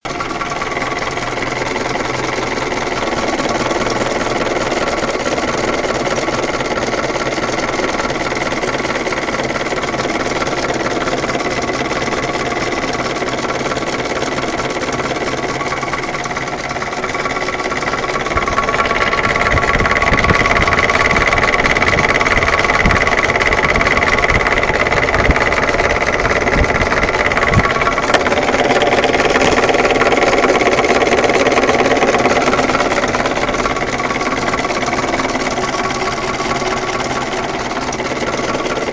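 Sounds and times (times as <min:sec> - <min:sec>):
engine running with a knock: 0:00.0 - 0:38.9.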